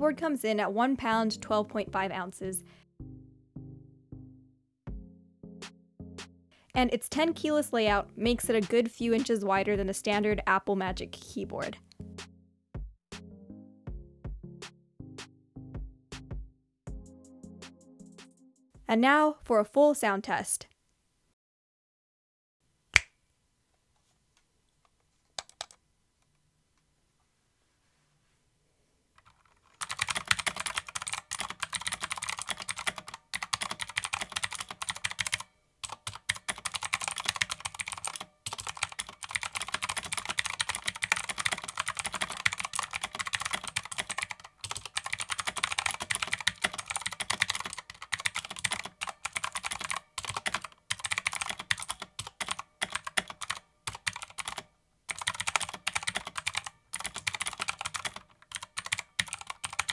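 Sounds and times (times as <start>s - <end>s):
mechanical keyboard typing: 25.4s - 25.8s, 29.2s - 59.9s.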